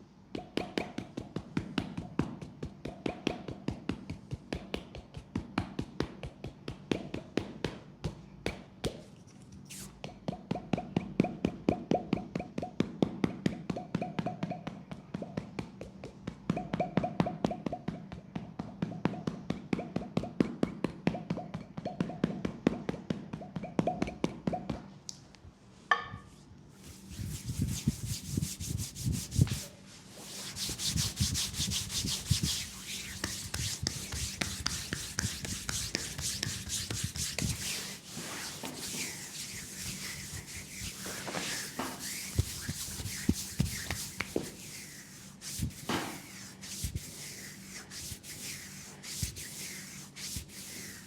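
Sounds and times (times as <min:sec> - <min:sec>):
percussive massage strokes: 0:00.4 - 0:09.0, 0:09.6 - 0:24.9, 0:26.8 - 0:51.0
brisk rubbing: 0:26.9 - 0:51.0.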